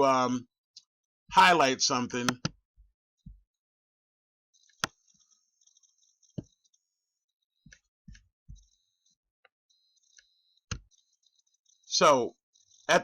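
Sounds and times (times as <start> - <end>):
computer mouse clicking: 4.6 - 5.0.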